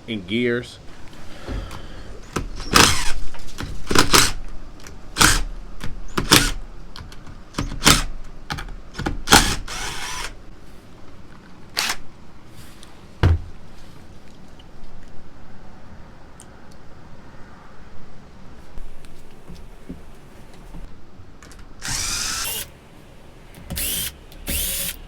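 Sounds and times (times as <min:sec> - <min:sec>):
dull thump: 0:13.2 - 0:13.6.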